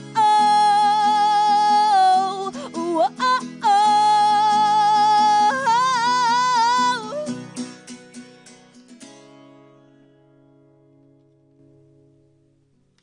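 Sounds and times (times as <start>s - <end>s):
woman singing with vibrato: 0.0s - 7.6s
acoustic guitar strumming: 0.0s - 13.0s.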